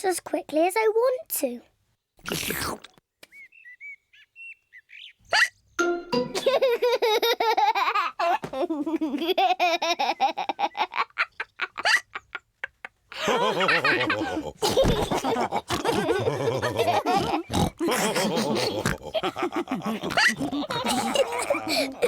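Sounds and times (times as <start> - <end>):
cartoon pigs laughing and snorting: 6.1 - 22.0.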